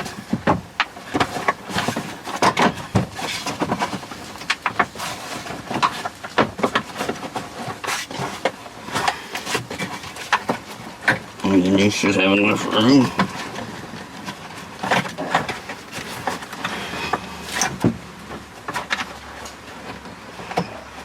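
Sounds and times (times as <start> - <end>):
plastic parts clicking and rattling: 0.0 - 11.4.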